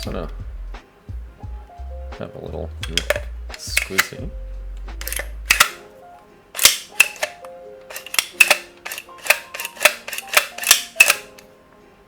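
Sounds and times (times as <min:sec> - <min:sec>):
toy shotgun mechanism clacking: 0:02.8 - 0:04.2, 0:05.0 - 0:05.8, 0:06.6 - 0:11.4.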